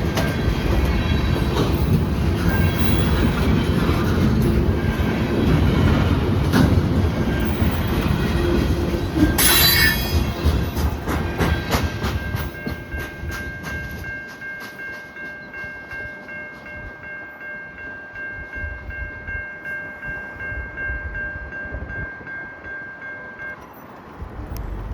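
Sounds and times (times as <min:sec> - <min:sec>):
train wheels clicking over rail joints: 0:00.0 - 0:17.0
high-pitched wheel squeal: 0:09.4 - 0:10.6.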